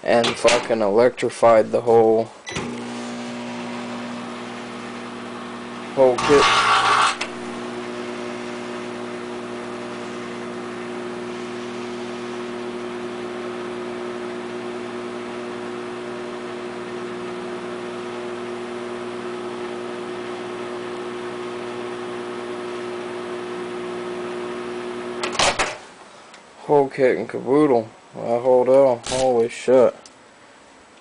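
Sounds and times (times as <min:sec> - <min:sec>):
microwave oven humming: 0:02.4 - 0:25.8.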